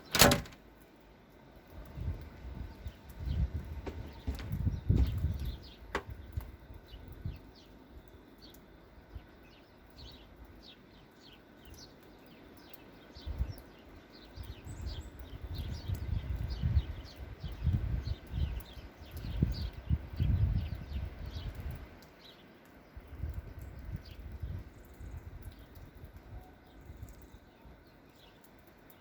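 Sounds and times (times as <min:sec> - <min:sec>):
wind buffeting microphone: 0:01.8 - 0:07.5, 0:13.2 - 0:13.6, 0:14.4 - 0:21.9, 0:23.0 - 0:27.3
small birds chirping: 0:02.6 - 0:29.0.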